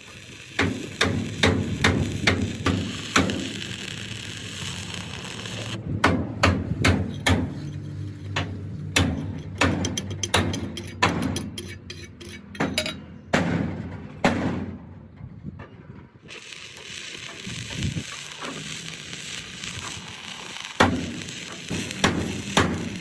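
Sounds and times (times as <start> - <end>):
crackling hiss: 0.0 - 5.8, 16.3 - 23.0
hammer striking steel: 6.0 - 14.8.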